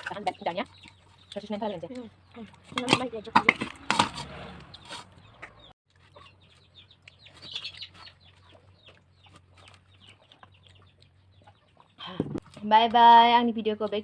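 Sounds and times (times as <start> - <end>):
chickens clucking: 0.0 - 12.6.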